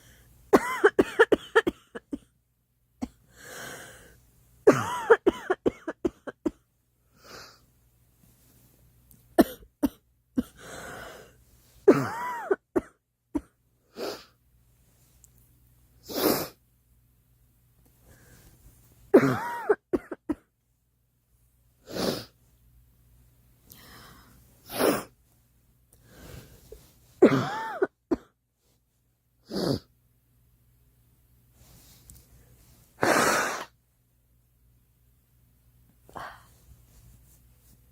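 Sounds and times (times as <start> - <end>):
girl coughing: 0.5 - 2.3, 4.7 - 6.6, 9.4 - 10.6, 11.9 - 13.5, 19.2 - 20.5, 27.2 - 28.3.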